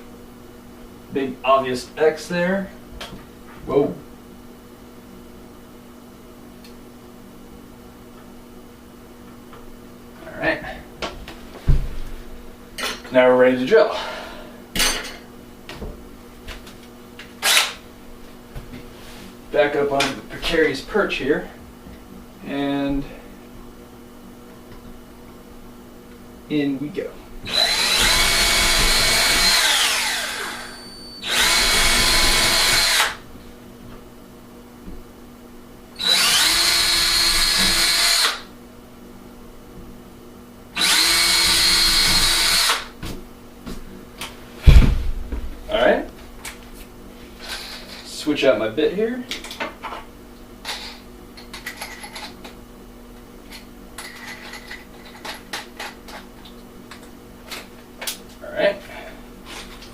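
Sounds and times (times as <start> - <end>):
faint steady hum: 0.0 - 59.9
power drill boring: 17.4 - 17.8, 27.5 - 33.2, 36.0 - 38.5, 40.8 - 42.9.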